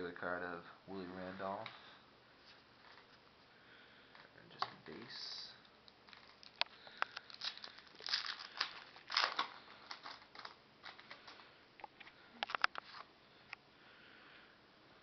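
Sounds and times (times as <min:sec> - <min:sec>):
cards scraping and crinkling: 0:06.0 - 0:13.1.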